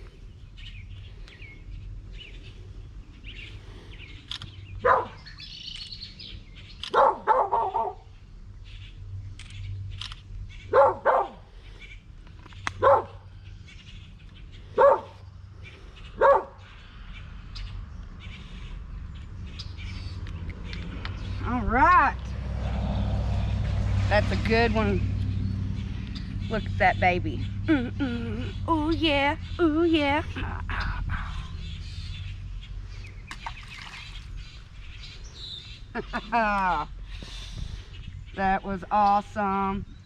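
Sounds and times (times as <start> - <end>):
faint birds chirping: 0.0 - 40.0
dog barking: 4.8 - 5.3, 6.9 - 8.1, 10.7 - 11.4, 12.8 - 13.2, 14.8 - 15.2, 16.2 - 16.6.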